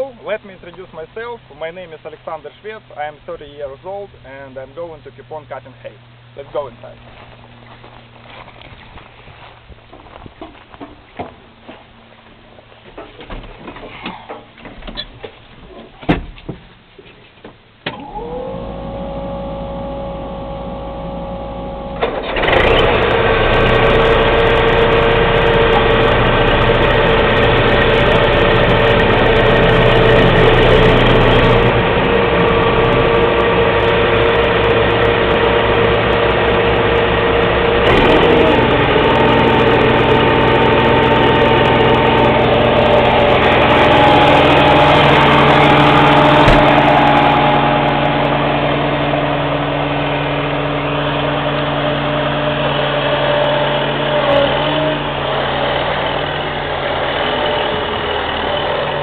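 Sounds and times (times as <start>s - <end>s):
diesel engine starting and running: 17.6s - 59.0s.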